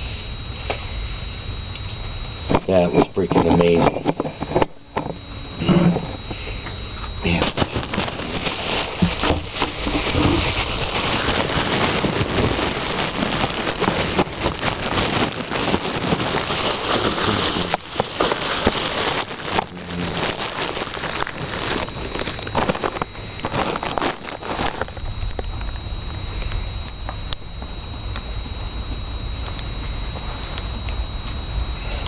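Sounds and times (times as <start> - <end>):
heavy rain pouring: 10.2 - 21.8.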